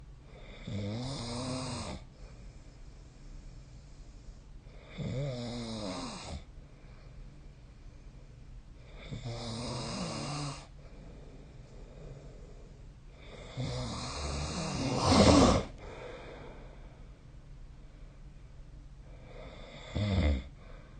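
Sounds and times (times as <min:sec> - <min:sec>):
person snoring: 0:00.3 - 0:02.1, 0:08.9 - 0:10.7, 0:11.3 - 0:16.7, 0:19.3 - 0:20.5.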